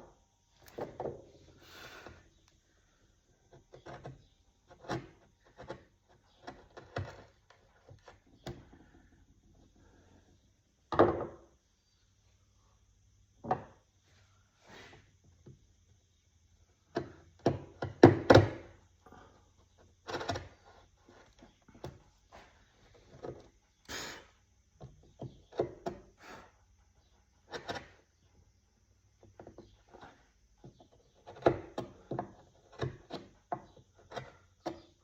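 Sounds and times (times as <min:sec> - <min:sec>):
wooden knocks and thuds: 0:10.9 - 0:11.5, 0:13.4 - 0:13.8, 0:16.9 - 0:18.8.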